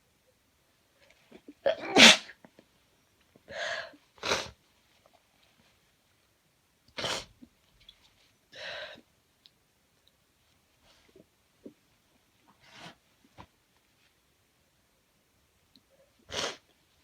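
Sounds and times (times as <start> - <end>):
person sneezing: 1.7 - 2.4
person sniffing: 3.6 - 4.6, 16.3 - 16.6.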